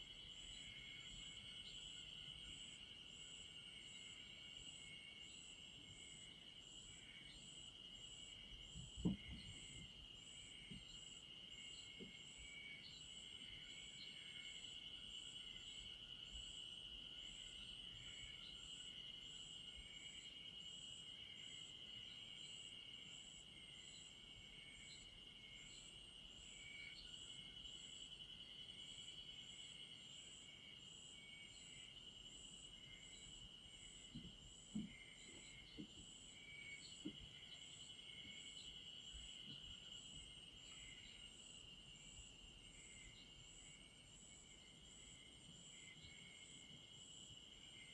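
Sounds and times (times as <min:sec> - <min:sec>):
insect chirps: 0:00.0 - 0:47.9
soft low knock: 0:09.0 - 0:09.6.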